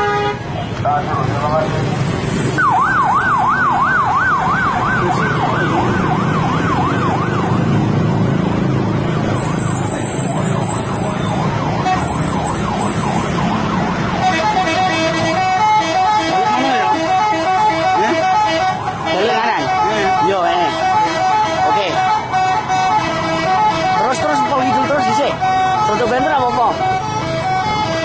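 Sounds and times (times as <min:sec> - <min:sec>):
low vehicle rumble: 0:00.7 - 0:19.1
warbling electronic siren: 0:02.6 - 0:08.0, 0:08.8 - 0:14.3.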